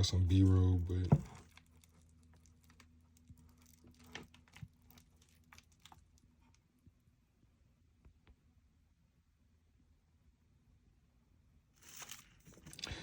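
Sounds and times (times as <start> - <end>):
low faint hum: 0.0 - 13.0
hands handling packaging: 0.4 - 6.3, 11.8 - 13.0.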